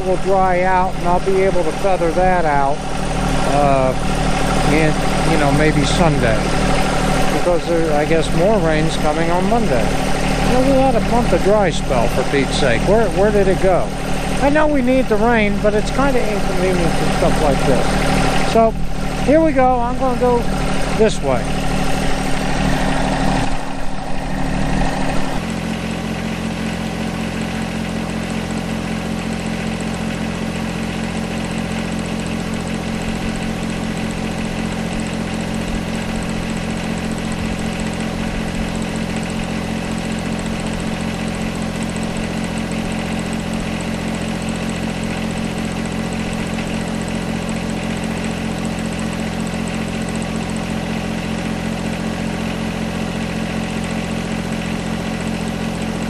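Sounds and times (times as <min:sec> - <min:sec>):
tractor diesel engine running: 0:00.0 - 0:56.0.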